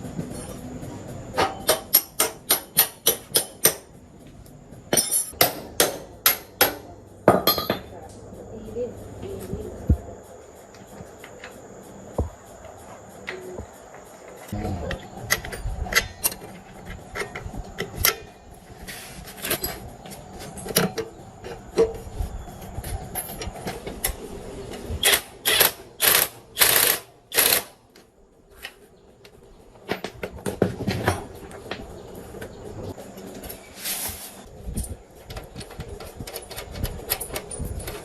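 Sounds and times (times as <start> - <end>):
metal parts clicking and clattering: 5.0 - 5.4, 34.7 - 38.0.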